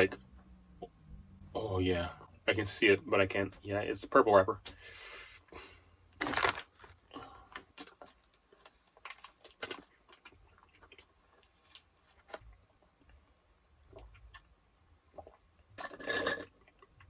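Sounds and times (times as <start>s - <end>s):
person chewing food: 6.2s - 13.2s.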